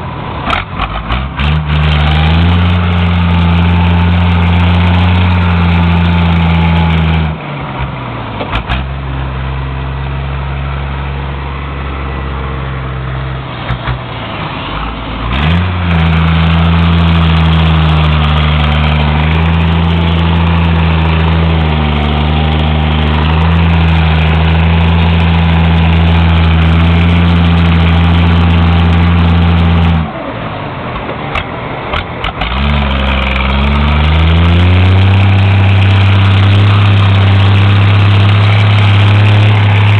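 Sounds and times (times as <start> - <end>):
car engines idling with deep rumble: 6.6 - 15.3, 34.8 - 39.9.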